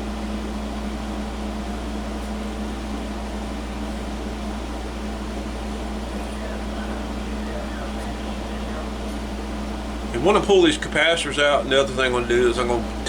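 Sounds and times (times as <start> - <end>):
machine hum with fan whoosh: 0.0 - 13.0
steady higher tone: 5.8 - 13.0.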